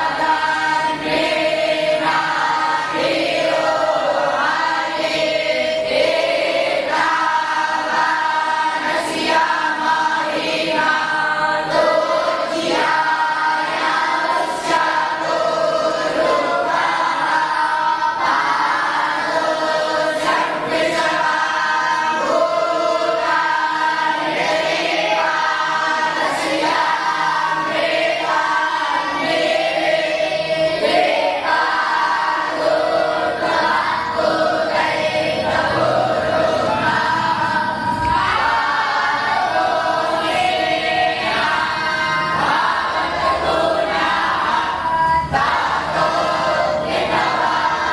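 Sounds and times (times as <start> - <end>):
voices chanting in unison: 0.0 - 47.9.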